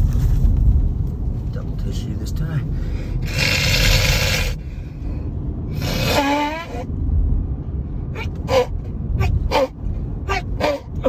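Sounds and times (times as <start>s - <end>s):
low rumble: 0.0s - 11.0s
man blowing nose: 3.3s - 4.6s, 5.8s - 6.8s.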